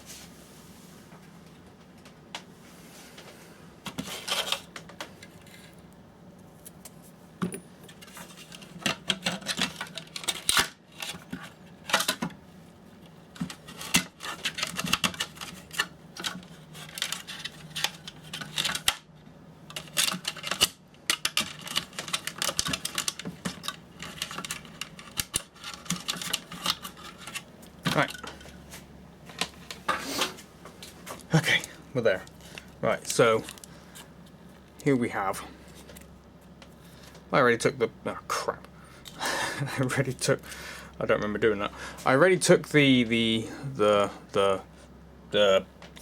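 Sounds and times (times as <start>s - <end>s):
faint steady hum: 0.0s - 46.0s
hand tools clicking and rattling: 19.7s - 28.6s
small metal parts being handled: 19.7s - 29.8s.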